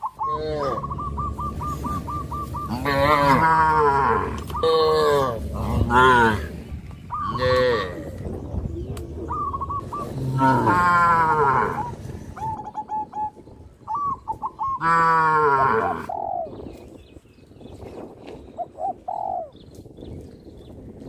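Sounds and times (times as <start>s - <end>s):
short bird calls: 0.0s - 3.5s
cattle mooing: 0.3s - 8.2s, 10.1s - 12.1s, 14.8s - 16.1s.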